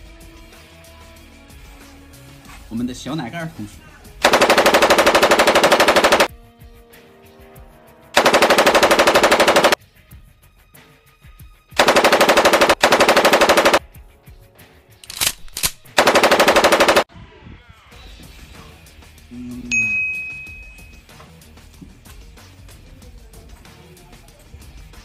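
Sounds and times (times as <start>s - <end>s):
machine-gun bursts: 4.2s - 6.3s, 8.2s - 9.8s, 11.8s - 13.8s, 15.1s - 17.1s.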